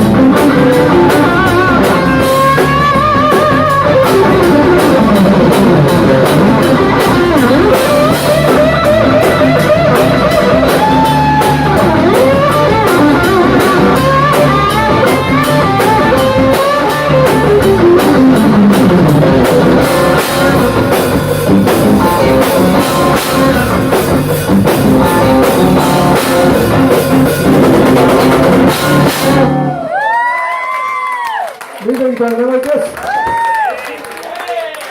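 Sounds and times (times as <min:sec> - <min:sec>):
drum kit beat: 0:00.0 - 0:30.3
electric guitar lead: 0:00.0 - 0:30.5.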